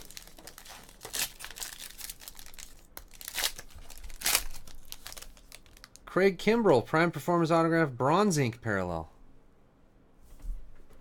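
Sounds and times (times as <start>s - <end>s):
cards rustling: 0.0s - 6.0s
wrapper crinkling and tearing: 0.0s - 6.1s.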